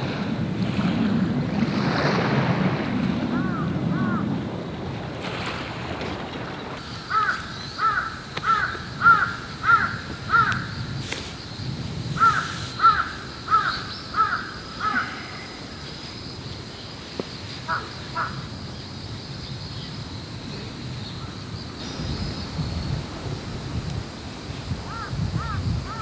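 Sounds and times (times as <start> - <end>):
surf washing: 0.0 - 18.6
crow cawing: 3.4 - 4.3, 7.0 - 10.7, 12.2 - 15.4, 24.9 - 26.0.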